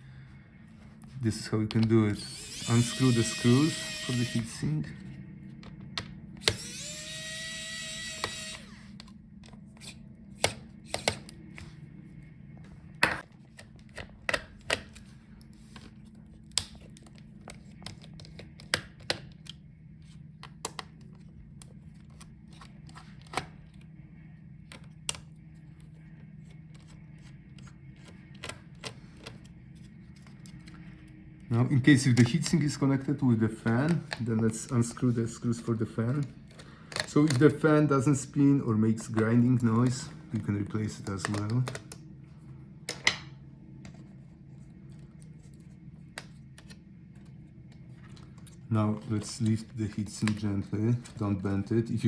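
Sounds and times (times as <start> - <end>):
steady low hum: 0.0 - 52.0
electric screwdriver whirring: 2.1 - 4.6, 6.4 - 9.1
screws and tools clicking: 2.2 - 4.4.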